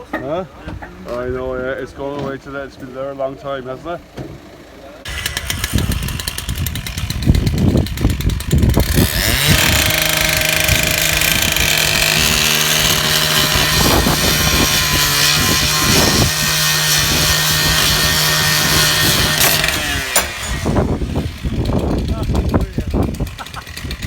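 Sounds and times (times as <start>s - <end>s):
excavator diesel engine revving: 5.1s - 24.0s
rapid engine knocking: 21.4s - 24.0s.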